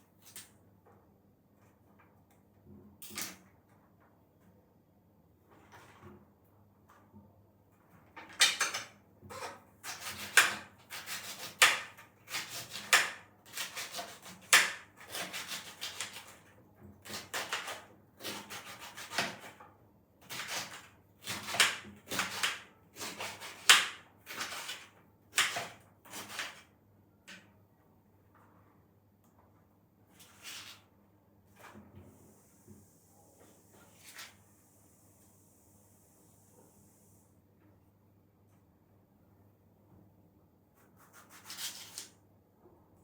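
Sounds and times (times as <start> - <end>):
rubbing or brushing strokes: 40.7 - 42.1.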